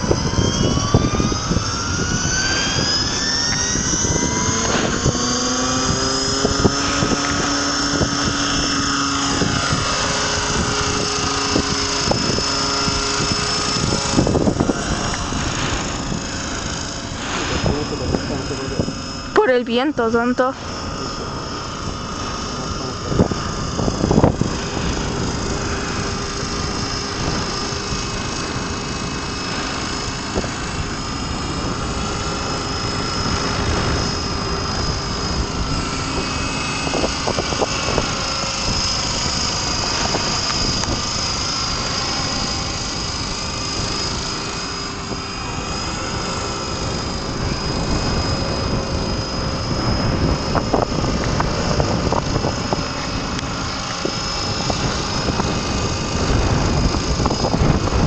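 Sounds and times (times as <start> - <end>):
model plane motor whining: 0.0 - 58.0
wind buffeting microphone: 0.0 - 58.0.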